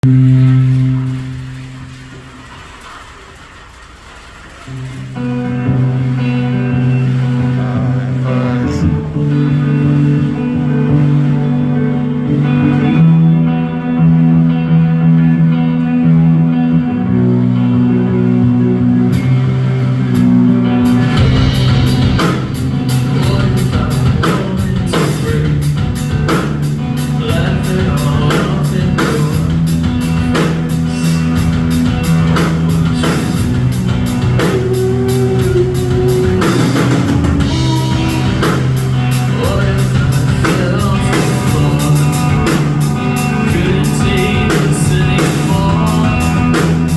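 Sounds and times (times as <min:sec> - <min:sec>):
electric guitar chords: 0:00.0 - 0:02.6, 0:04.7 - 0:46.9
live rock band: 0:04.7 - 0:46.9
drums and cymbals: 0:20.2 - 0:46.9.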